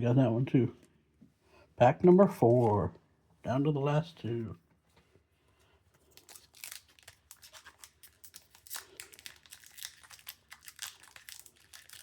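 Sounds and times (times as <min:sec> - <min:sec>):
wrapper tearing and crinkling: 0:06.1 - 0:12.0.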